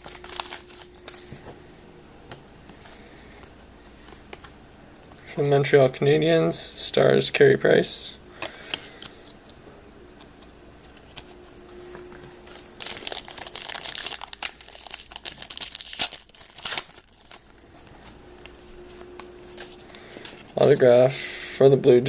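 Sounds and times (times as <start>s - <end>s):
wrapper crinkling and tearing: 0.0s - 1.4s, 12.4s - 20.6s.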